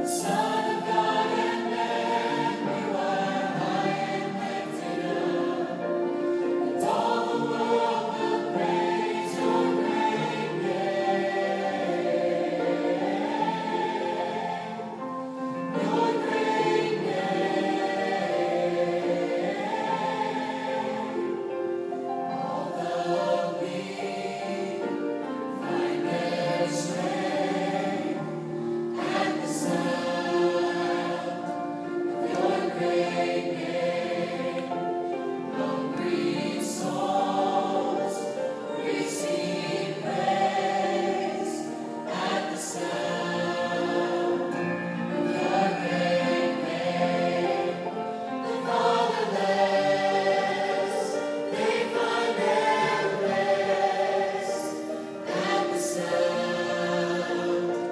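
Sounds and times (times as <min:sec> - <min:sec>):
choir singing in harmony: 0:00.0 - 0:57.9.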